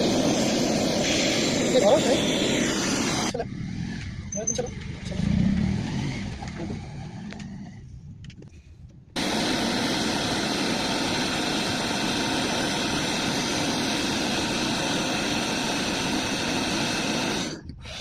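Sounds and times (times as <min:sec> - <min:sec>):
pressurised gas rushing: 0:00.0 - 0:08.2, 0:09.1 - 0:18.0.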